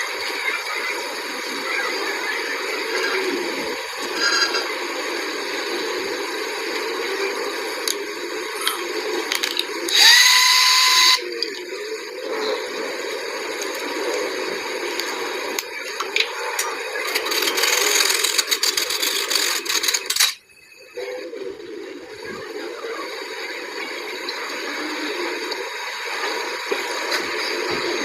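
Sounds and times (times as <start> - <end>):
steady background noise: 0.0 - 28.0
small motor whining: 9.9 - 11.2.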